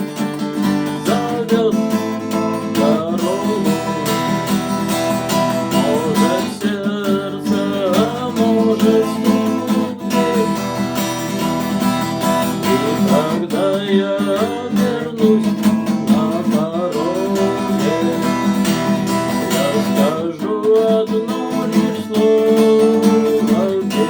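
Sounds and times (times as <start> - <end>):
strummed acoustic guitar: 0.0 - 24.0.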